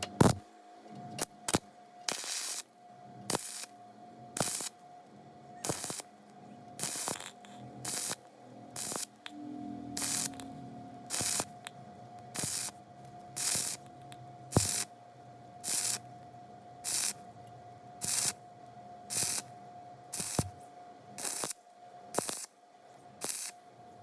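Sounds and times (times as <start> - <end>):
welding arc crackling: 0.0 - 0.4, 1.2 - 2.7, 3.3 - 3.7, 4.4 - 4.8, 5.6 - 6.1, 6.8 - 11.7, 12.3 - 12.8, 13.4 - 13.9, 14.5 - 14.9, 15.6 - 16.1, 16.8 - 17.2, 18.0 - 18.4, 19.1 - 19.5, 20.1 - 20.6, 21.2 - 22.5, 23.2 - 23.6
faint high tone: 9.3 - 11.1.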